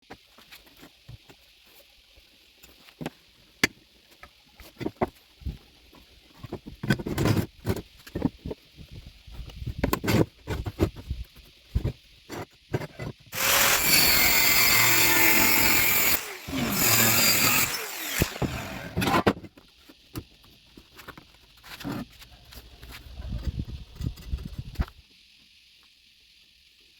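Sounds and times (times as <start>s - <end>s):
power saw cutting metal tube: 13.4s - 19.2s.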